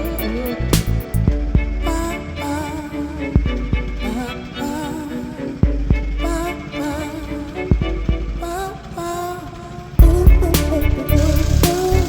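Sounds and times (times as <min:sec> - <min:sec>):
song with bass and drums: 0:00.0 - 0:02.1, 0:10.0 - 0:12.0.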